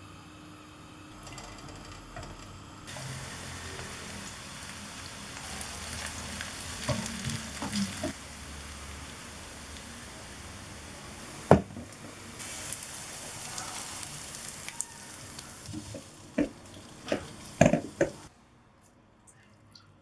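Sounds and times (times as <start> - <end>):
food sizzling in a frying pan: 1.0 - 18.3.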